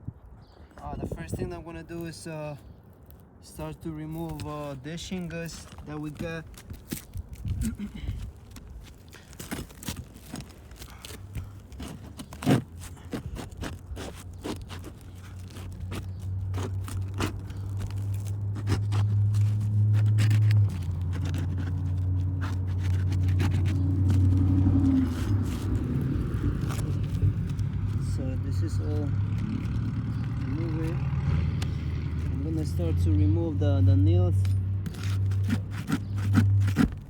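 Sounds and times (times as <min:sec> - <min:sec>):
roof shingles scraped loose: 0:05.2 - 0:28.2
vehicle engine running: 0:17.0 - 0:34.9.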